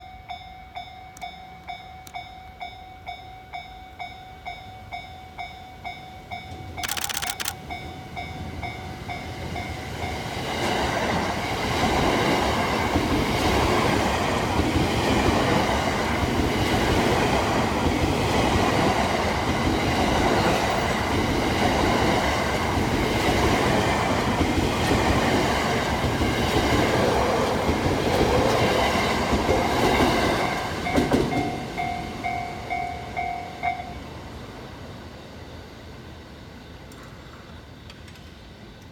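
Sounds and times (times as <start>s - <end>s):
level-crossing alarm bell ringing: 0.0s - 10.4s, 30.6s - 34.2s
electric train passing: 0.0s - 38.9s.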